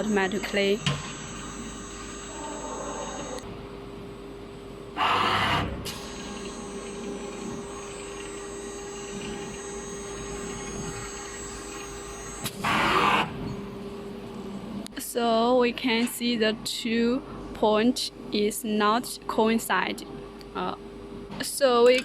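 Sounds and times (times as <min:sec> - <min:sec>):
dispensing machine motor hum: 0:00.0 - 0:03.5, 0:04.8 - 0:14.2.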